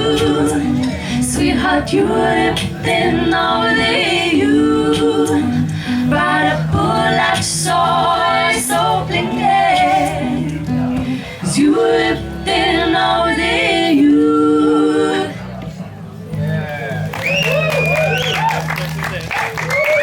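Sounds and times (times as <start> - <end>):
singers holding long notes: 0.0 - 15.7
low bass line: 0.0 - 19.3
live band accompaniment: 0.0 - 20.0.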